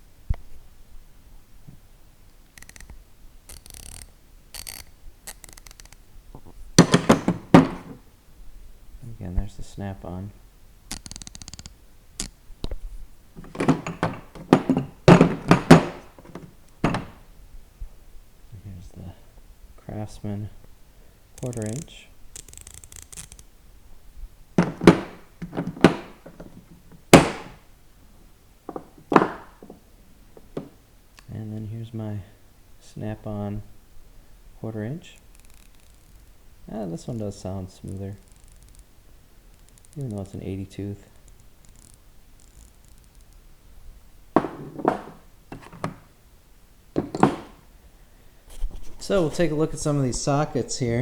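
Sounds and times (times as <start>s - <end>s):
ratchet clicking: 2.5s - 6.0s, 10.9s - 12.3s, 21.4s - 23.5s, 38.2s - 38.9s
hand tools knocking and clunking: 6.8s - 8.0s, 13.4s - 17.3s, 24.6s - 27.6s, 28.7s - 30.8s, 44.4s - 46.0s, 47.0s - 47.6s.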